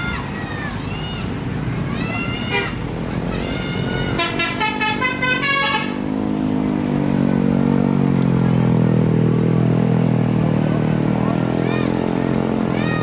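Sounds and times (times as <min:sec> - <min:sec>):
deep vehicle engine running: 0:00.0 - 0:13.0
multi-tone bus horn: 0:02.5 - 0:02.8, 0:03.8 - 0:06.2.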